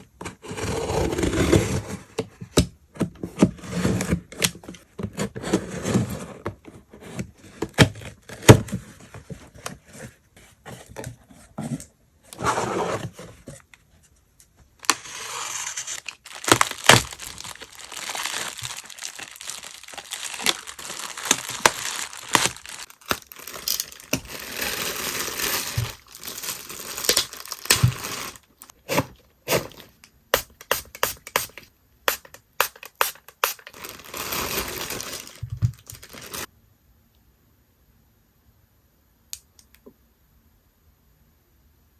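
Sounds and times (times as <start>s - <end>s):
plastic tearing: 14.8s - 28.7s, 33.2s - 36.5s
plastic packing crinkling: 15.6s - 28.7s, 33.5s - 36.5s.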